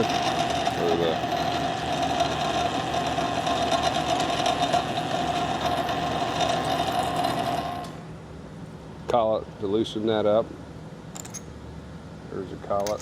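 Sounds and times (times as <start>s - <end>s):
lathe motor whine: 0.0s - 8.2s.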